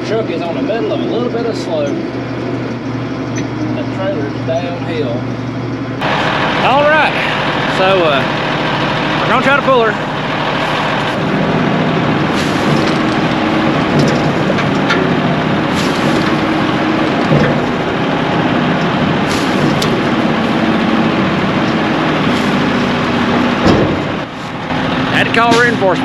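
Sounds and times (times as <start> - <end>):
tractor diesel engine under load: 0.0 - 26.0.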